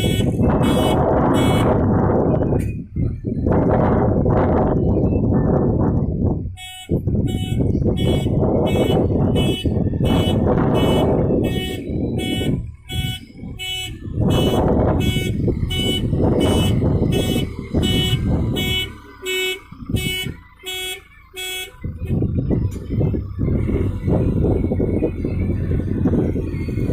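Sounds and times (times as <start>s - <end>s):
diesel engine running: 0.0s - 26.9s
reversing alarm beeping: 6.6s - 26.9s.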